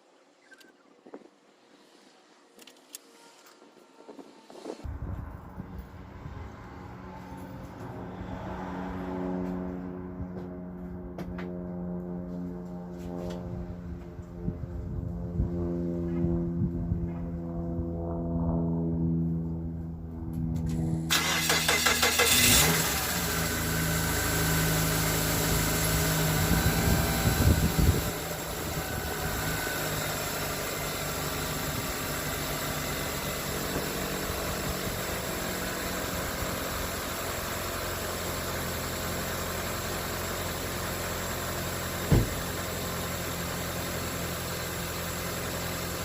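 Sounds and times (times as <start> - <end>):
car engine starting and idling: 20.6 - 46.0
sharp knock: 42.1 - 42.4.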